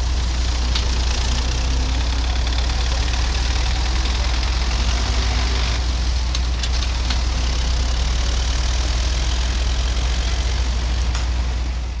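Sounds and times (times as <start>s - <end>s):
diesel engine running: 0.0s - 12.0s.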